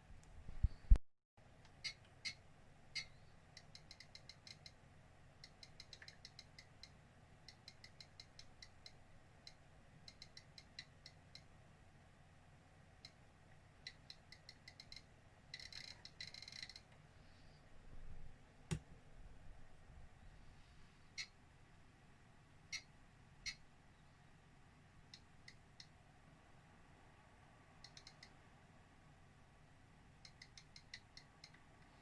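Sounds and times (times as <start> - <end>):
small sharp clicks: 5.4 - 11.5, 27.8 - 28.4, 30.2 - 32.0.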